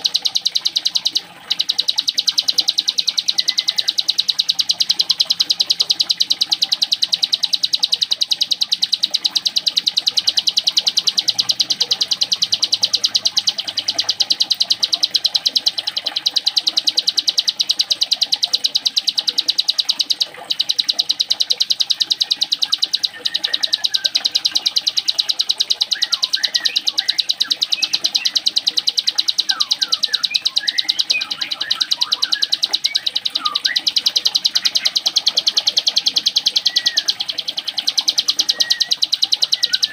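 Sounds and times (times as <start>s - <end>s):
songbird rattling trill: 0.0s - 39.9s
short bird chirps: 25.3s - 39.9s.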